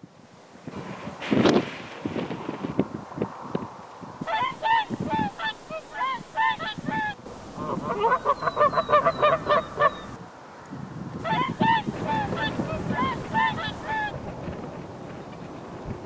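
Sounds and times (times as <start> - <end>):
geese honking: 4.2 - 10.2, 11.2 - 14.2.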